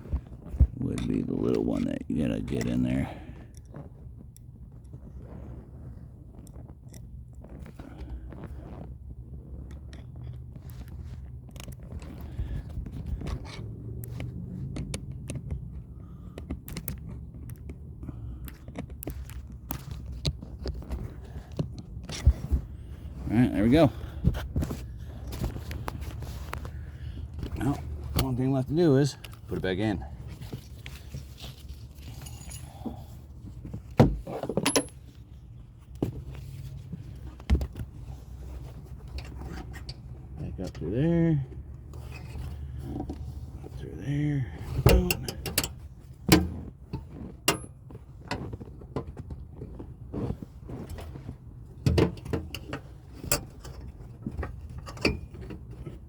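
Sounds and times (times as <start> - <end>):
metal clinks: 31.9 - 33.1
seat belt hardware knock: 33.6 - 35.0, 44.8 - 47.8.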